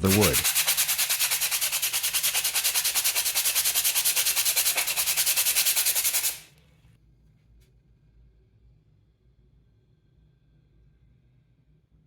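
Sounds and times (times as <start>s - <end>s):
hand rubbing on wood: 0.0s - 6.5s.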